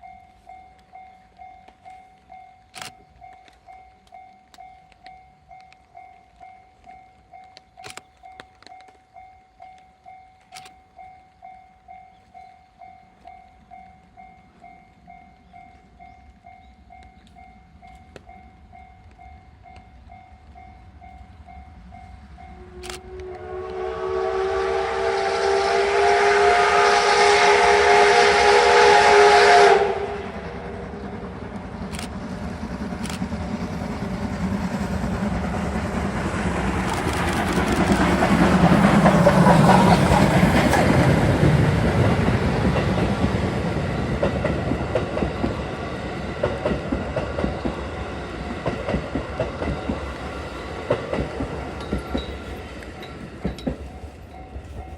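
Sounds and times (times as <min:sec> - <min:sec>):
train rumble: 0:00.0 - 0:54.9
steam locomotive whistle: 0:22.5 - 0:31.0.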